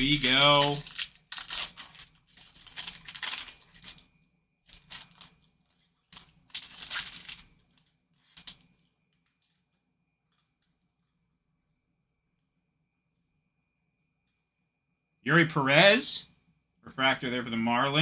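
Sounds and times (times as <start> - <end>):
card pack wrapper tearing and crinkling: 0.0 - 4.1, 4.7 - 8.6.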